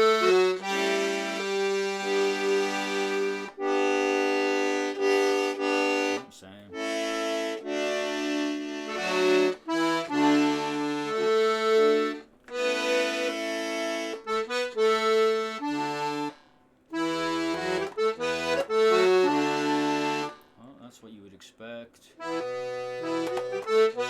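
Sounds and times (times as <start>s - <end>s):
button accordion playing: 0.0s - 20.5s, 22.2s - 24.0s.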